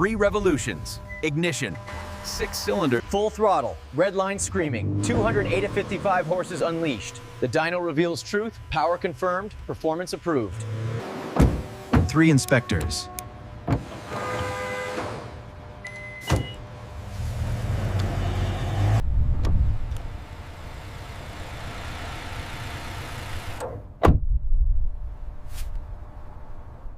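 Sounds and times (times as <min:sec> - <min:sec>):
low engine rumble: 0:00.0 - 0:10.7.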